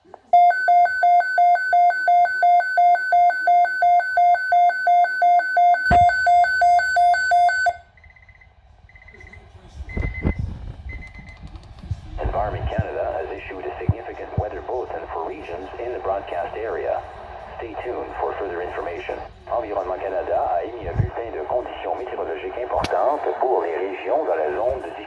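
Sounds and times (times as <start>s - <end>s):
weather alert alarm beeping: 0.3s - 11.4s.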